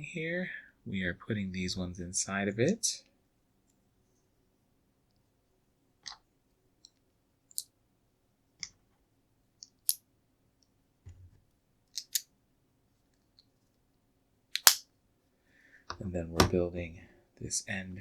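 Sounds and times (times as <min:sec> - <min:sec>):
plastic pieces clicking: 0:09.6 - 0:10.0, 0:11.9 - 0:12.3, 0:14.5 - 0:14.8.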